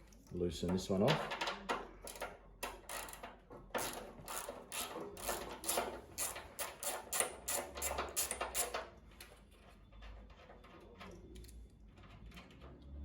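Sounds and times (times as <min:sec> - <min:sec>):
ratchet wrench clicking: 0:02.1 - 0:08.8.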